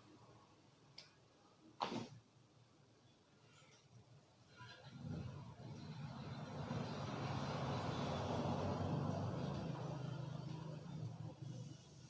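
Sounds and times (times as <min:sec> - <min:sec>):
passing motor engine drone: 0:05.0 - 0:12.0.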